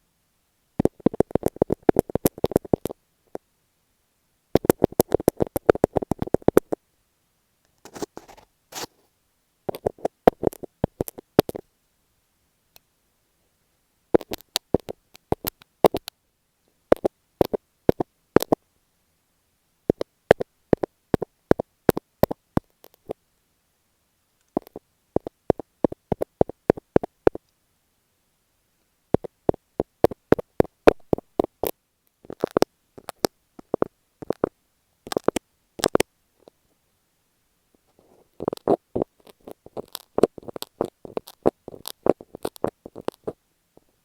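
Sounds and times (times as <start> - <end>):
tapping on microphone tape: 0.8 - 3.4, 4.6 - 6.8, 7.8 - 8.9, 9.7 - 11.6, 14.2 - 16.1, 16.9 - 18.6, 19.9 - 23.2, 24.5 - 27.4, 29.2 - 34.5, 35.1 - 36.6, 37.8 - 43.9
scratchy rustle on tape: 7.8 - 9.1, 37.8 - 43.4.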